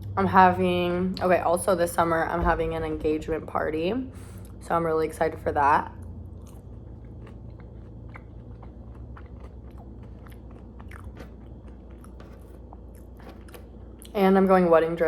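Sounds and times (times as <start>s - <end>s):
steady low hum: 0.0s - 15.0s
person chewing food: 6.0s - 14.1s.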